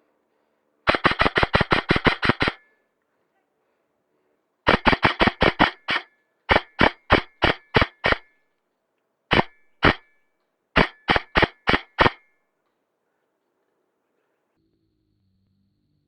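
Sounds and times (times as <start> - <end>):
airsoft rifle rapid shots: 0.9 - 2.7, 4.7 - 8.3, 9.3 - 10.1, 10.8 - 12.3.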